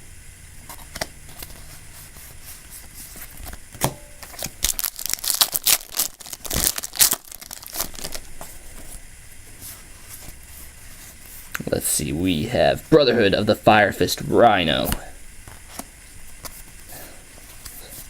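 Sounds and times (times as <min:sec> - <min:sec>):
foil wrapper crinkling and tearing: 0:04.2 - 0:08.9.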